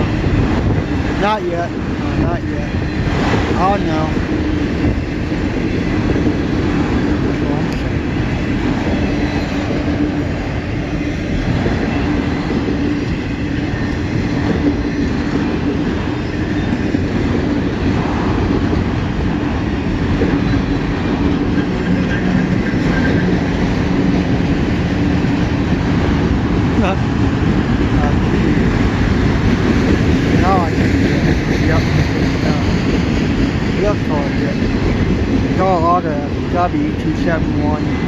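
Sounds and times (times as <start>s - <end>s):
freight train wheels rumbling: 0.0s - 38.0s.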